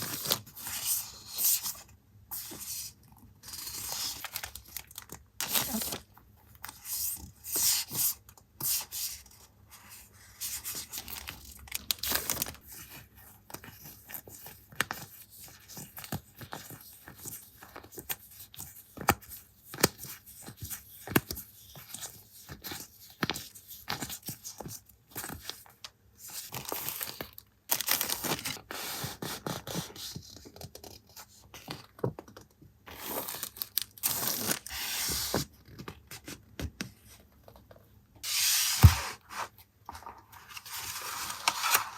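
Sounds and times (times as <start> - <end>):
paper rustling and tearing: 38.2 - 41.9.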